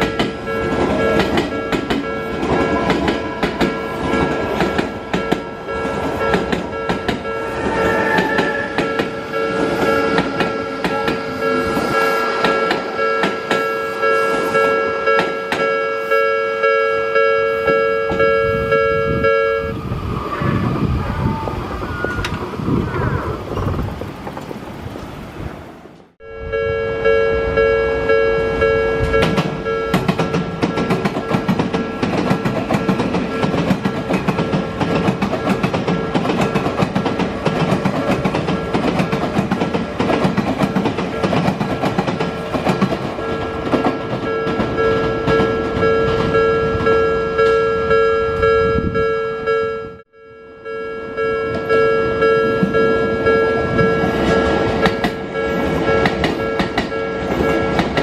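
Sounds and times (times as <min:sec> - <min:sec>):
train wheels clacking on rail joints: 0:00.0 - 0:15.8, 0:29.0 - 0:47.6, 0:52.5 - 0:58.0
level crossing alarm dinging: 0:00.0 - 0:19.8, 0:26.2 - 0:58.0.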